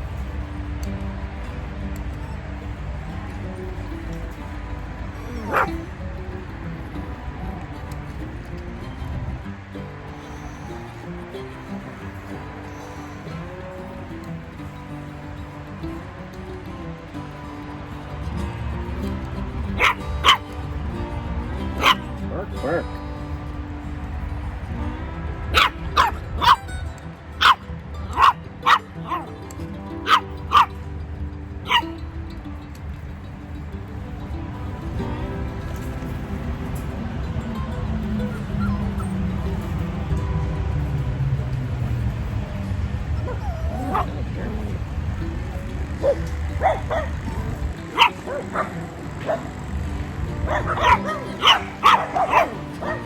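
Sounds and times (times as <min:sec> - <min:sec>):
puppies yipping and barking: 0:04.6 - 0:08.7, 0:09.4 - 0:15.3, 0:19.0 - 0:24.6, 0:25.4 - 0:26.8, 0:27.4 - 0:32.2, 0:37.8 - 0:40.1, 0:42.2 - 0:53.0
puppy yipping: 0:05.1 - 0:05.8, 0:10.2 - 0:11.1, 0:19.8 - 0:20.5, 0:21.8 - 0:22.9, 0:25.5 - 0:26.7, 0:27.4 - 0:29.3, 0:30.0 - 0:30.8, 0:31.7 - 0:31.9, 0:38.2 - 0:39.2, 0:43.0 - 0:44.7, 0:46.0 - 0:49.6, 0:50.4 - 0:53.0.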